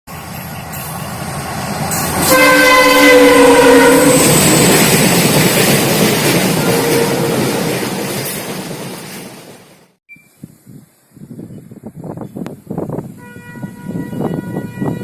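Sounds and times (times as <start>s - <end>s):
freight train passing roar: 0.1s - 10.0s, 13.0s - 15.0s
locomotive horn blast: 2.0s - 4.5s, 6.6s - 7.5s, 13.2s - 15.0s.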